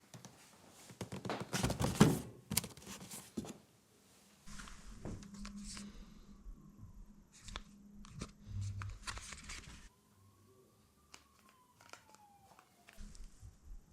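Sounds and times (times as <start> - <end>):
faint steady hum: 3.7 - 11.3.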